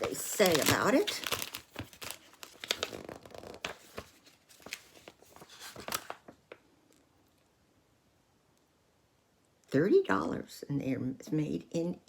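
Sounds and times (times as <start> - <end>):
packaging rustling and crinkling: 0.0 - 6.6.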